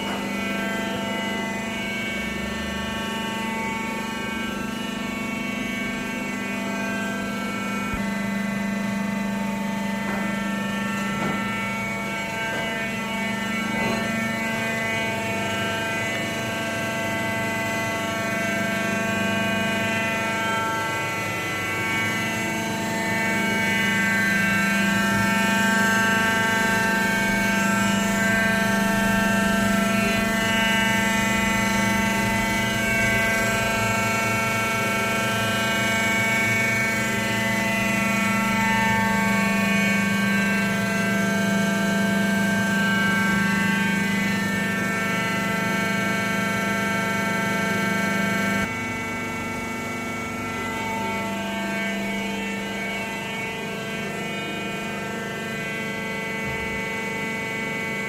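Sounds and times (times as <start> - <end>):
loader engine drone: 0.0 - 45.9
mechanical whine: 0.0 - 58.0.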